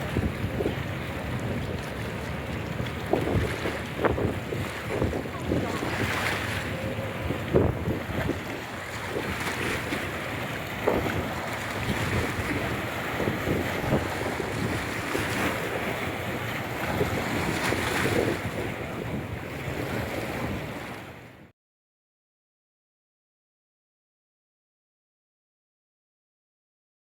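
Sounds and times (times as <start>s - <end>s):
water washing: 0.0s - 20.9s
wind buffeting microphone: 0.0s - 21.5s.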